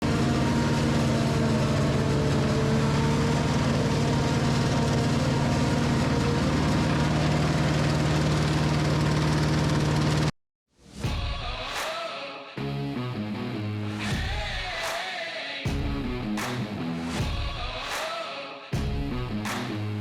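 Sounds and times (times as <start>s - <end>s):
heavy machinery engine droning: 0.0s - 10.3s.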